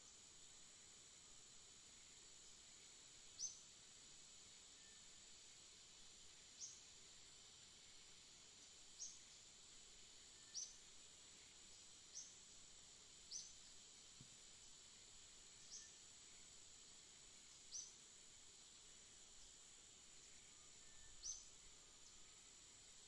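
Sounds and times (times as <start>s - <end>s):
steady high hiss: 0.0s - 23.0s
small bird chirping: 3.4s - 3.6s, 10.4s - 10.8s, 12.1s - 12.4s, 13.3s - 13.6s, 15.6s - 16.0s, 17.5s - 18.0s, 20.8s - 22.2s.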